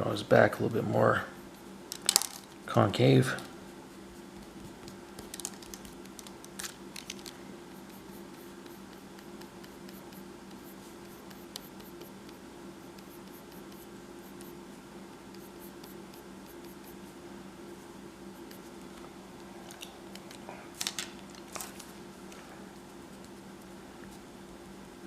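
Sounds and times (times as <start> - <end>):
steady low hum: 0.0 - 25.0
pencil scratching on paper: 7.7 - 14.6, 15.3 - 17.2, 18.4 - 18.8
sharp pencil ticks: 7.7 - 14.6, 15.3 - 17.0.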